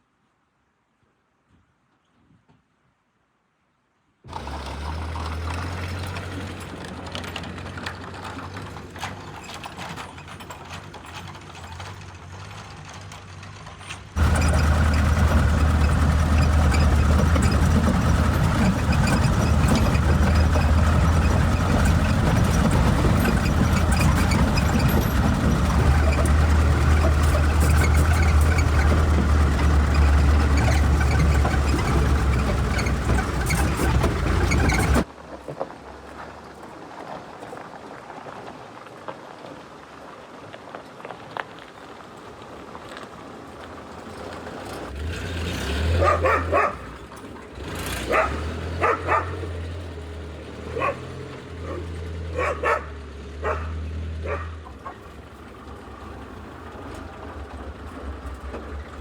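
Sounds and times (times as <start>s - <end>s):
vehicle engine rumbling: 4.3s - 36.5s, 42.0s - 59.0s
dog barking: 46.0s - 46.9s, 48.0s - 49.5s, 50.7s - 55.0s.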